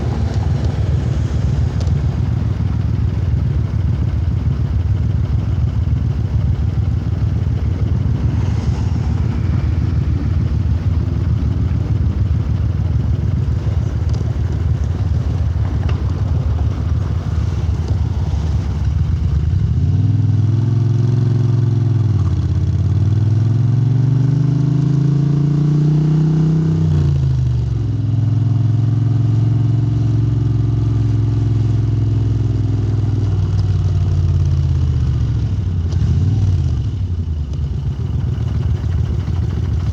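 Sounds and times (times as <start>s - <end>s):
motorcycle engine rumbling: 0.0s - 20.4s, 32.4s - 39.9s.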